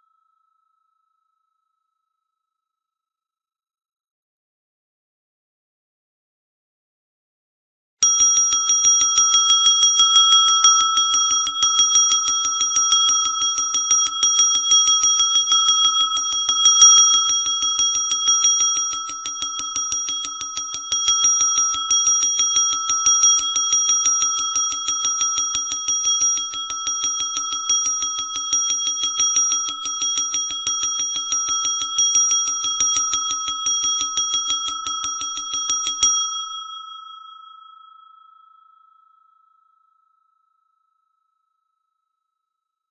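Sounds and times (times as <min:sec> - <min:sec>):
small brass bell ringing rapidly: 0:08.0 - 0:37.4.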